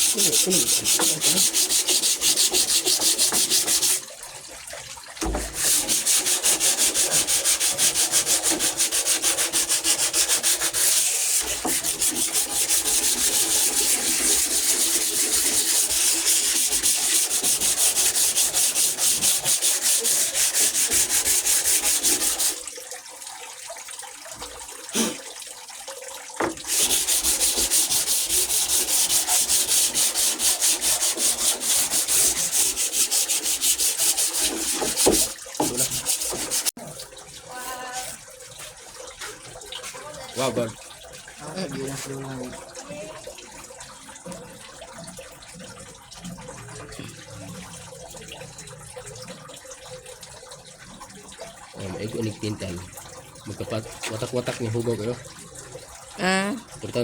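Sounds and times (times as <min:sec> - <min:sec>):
sandpaper rubbing on wood: 0:00.0 - 0:04.0, 0:05.6 - 0:22.6, 0:26.7 - 0:36.7.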